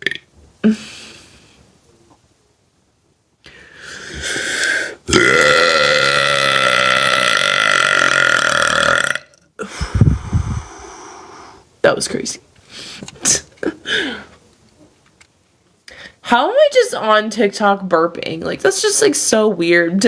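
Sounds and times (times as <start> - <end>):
woman burping: 5.1 - 10.3.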